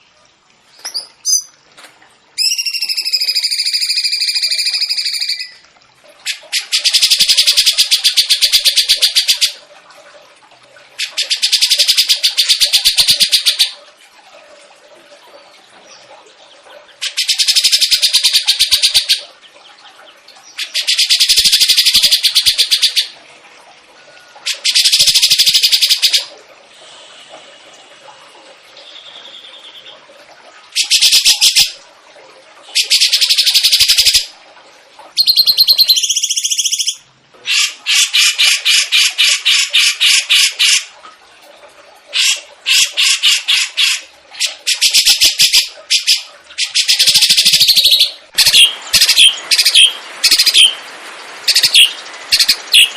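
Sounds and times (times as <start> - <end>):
bird twittering: 0.8 - 1.5, 2.4 - 5.6, 35.2 - 37.6, 42.2 - 50.8, 51.5 - 52.9
songbird rattling trills: 0.8 - 1.5, 2.4 - 5.6, 35.2 - 37.0, 44.7 - 50.8.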